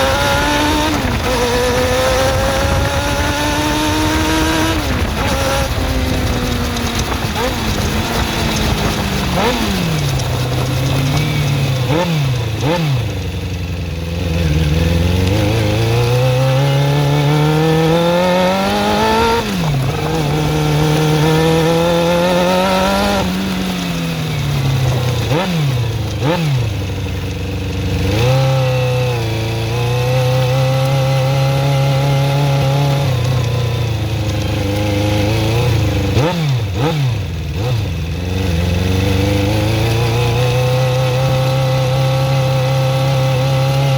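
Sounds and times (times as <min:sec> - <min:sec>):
engine ticking: 0:00.0 - 0:28.4
motorcycle engine revving: 0:00.0 - 0:43.9.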